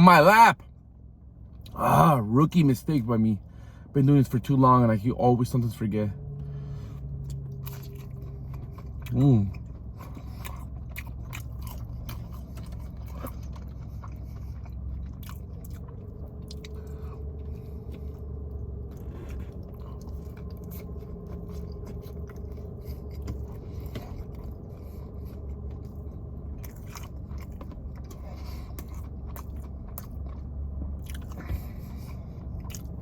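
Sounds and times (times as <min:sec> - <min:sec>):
steady low hum: 0:00.0 - 0:33.0
chewing food with crunches: 0:06.7 - 0:33.0.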